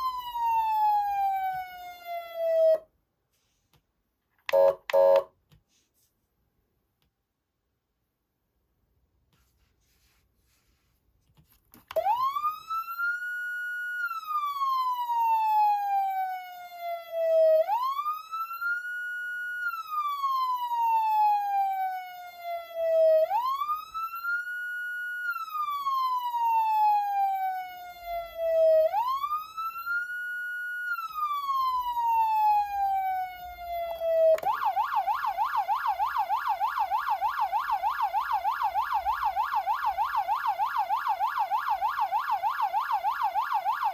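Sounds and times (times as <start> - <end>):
siren yelp tone: 0.0 - 2.8, 4.5 - 5.3, 12.0 - 43.9
police siren wail: 0.0 - 2.9, 12.0 - 43.9.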